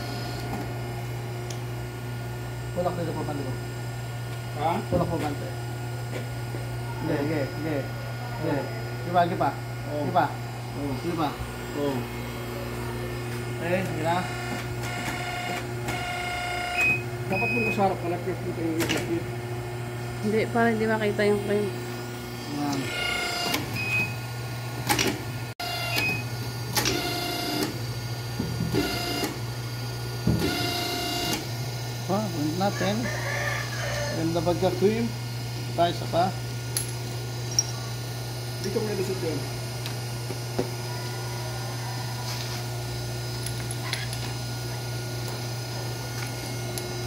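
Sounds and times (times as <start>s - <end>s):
machine motor and pump humming: 0.0s - 47.0s.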